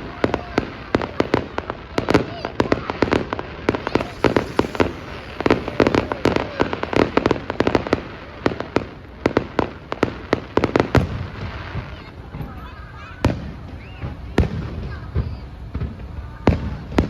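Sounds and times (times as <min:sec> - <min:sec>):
fireworks bangs and cracks: 0:02.8 - 0:07.5.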